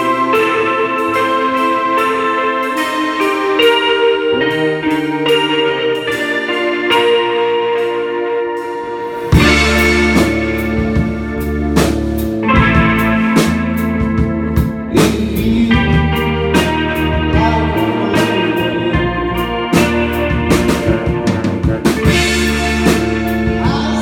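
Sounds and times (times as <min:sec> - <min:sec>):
keyboard chords: 0:00.0 - 0:24.0
sustained guitar chords: 0:00.0 - 0:24.0
drum and cymbal hits: 0:08.6 - 0:17.6, 0:19.0 - 0:24.0.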